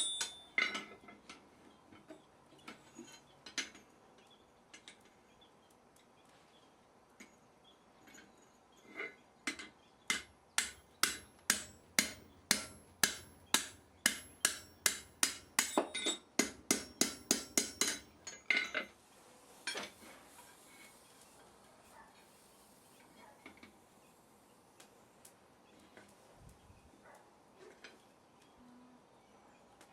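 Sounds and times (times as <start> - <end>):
hammer striking metal on anvil: 0.0 - 0.9, 10.1 - 18.8.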